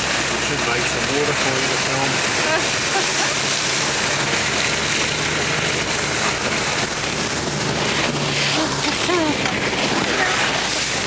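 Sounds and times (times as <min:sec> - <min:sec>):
low engine hum: 0:00.0 - 0:11.0
water rushing and spraying: 0:00.0 - 0:11.0.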